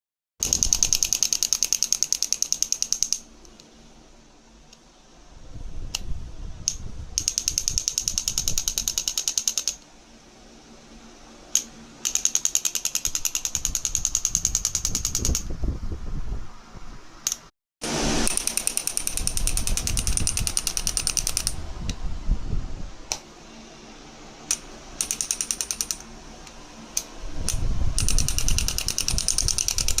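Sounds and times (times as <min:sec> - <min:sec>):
device clicking rapidly: 0:00.4 - 0:03.3, 0:06.7 - 0:09.8, 0:11.5 - 0:15.5, 0:18.2 - 0:21.6, 0:24.5 - 0:26.1, 0:26.9 - 0:30.0.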